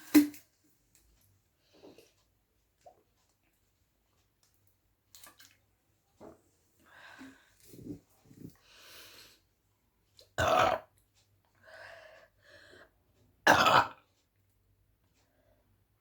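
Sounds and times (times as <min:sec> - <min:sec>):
woman burping loudly: 0:10.4 - 0:10.9, 0:13.5 - 0:14.0.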